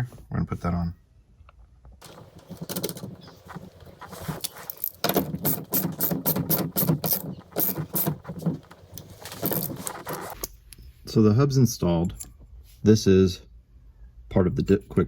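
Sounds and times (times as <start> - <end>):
ratchet wrench clicking: 4.4 - 8.1.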